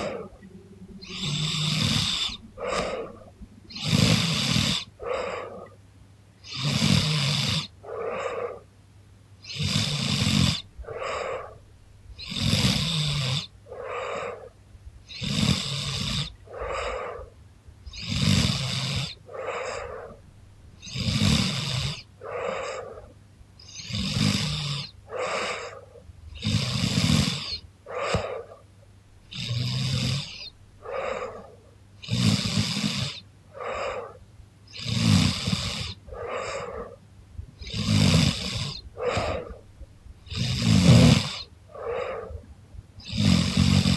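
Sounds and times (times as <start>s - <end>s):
woman snoring: 0.0s - 5.6s, 6.5s - 8.5s, 9.5s - 10.6s, 15.2s - 17.0s, 20.9s - 22.9s, 23.8s - 25.8s, 26.4s - 28.3s, 29.3s - 34.2s, 34.8s - 37.0s, 37.6s - 39.6s, 40.3s - 42.3s, 43.1s - 43.9s
quiet breath: 0.0s - 8.8s, 9.8s - 14.7s, 15.7s - 43.9s.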